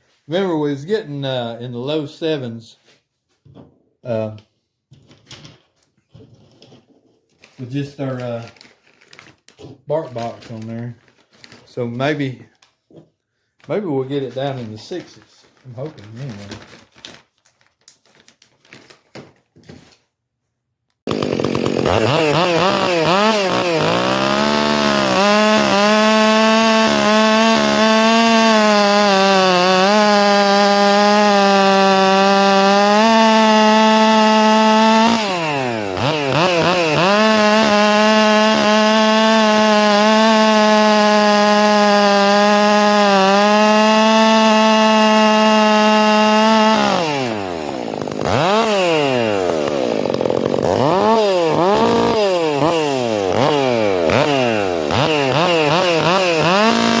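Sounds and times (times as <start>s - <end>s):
chainsaw cutting wood: 21.1s - 57.0s.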